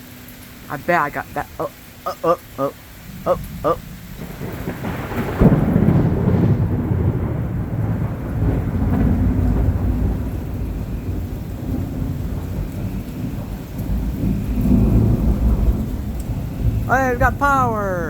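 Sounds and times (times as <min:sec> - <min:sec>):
heavy rain falling: 0:00.0 - 0:18.0
thunder crack and rumble: 0:03.1 - 0:17.4.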